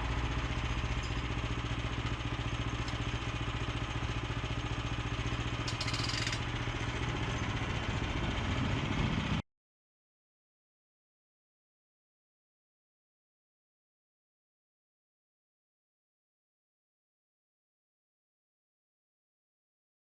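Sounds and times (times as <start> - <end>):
small engine idling: 0.0 - 9.4.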